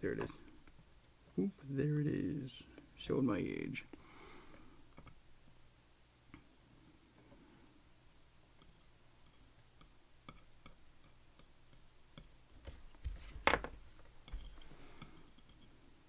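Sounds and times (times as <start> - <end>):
metal part clinking: 13.4 - 13.8.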